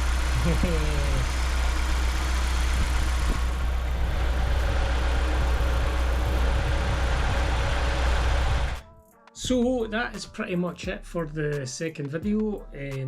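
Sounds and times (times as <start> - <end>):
car engine idling: 0.0 - 8.8.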